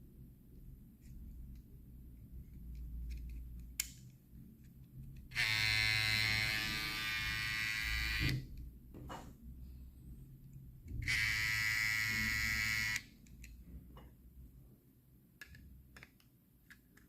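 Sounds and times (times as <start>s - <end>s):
hair trimmer motor whining: 5.4s - 8.3s.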